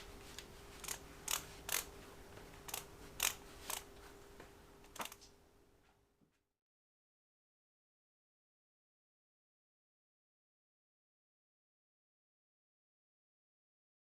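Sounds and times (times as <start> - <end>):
faint steady hum: 0.0 - 6.4
sharp clicks and knocks: 4.9 - 5.3.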